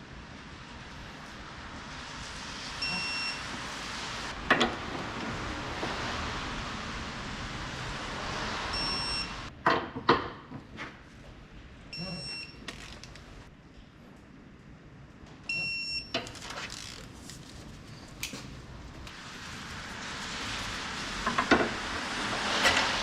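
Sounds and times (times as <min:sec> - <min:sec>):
short electronic beeps: 0:02.8 - 0:03.4, 0:08.8 - 0:09.3, 0:11.9 - 0:12.6, 0:15.5 - 0:16.2.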